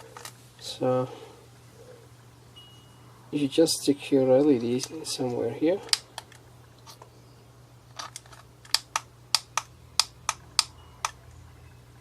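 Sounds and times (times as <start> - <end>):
plastic clicks of led tester: 5.9 - 6.4, 8.1 - 11.2.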